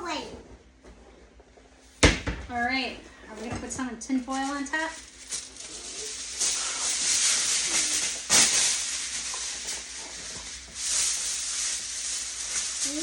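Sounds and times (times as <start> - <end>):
aluminium foil crinkling: 3.4 - 13.0.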